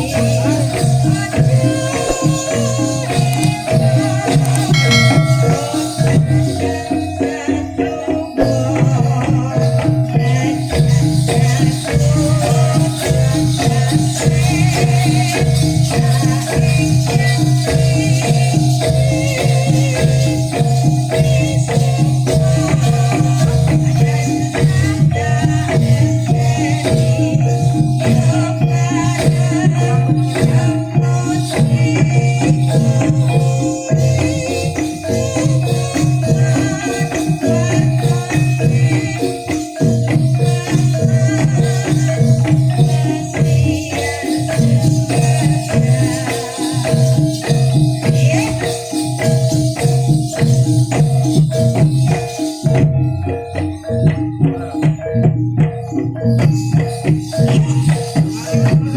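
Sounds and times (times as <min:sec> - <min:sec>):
shaking rattle: 0:00.0 - 0:07.0, 0:08.4 - 0:58.9
tuned struck percussion: 0:00.0 - 0:58.9
low sustained tone: 0:04.6 - 0:06.9.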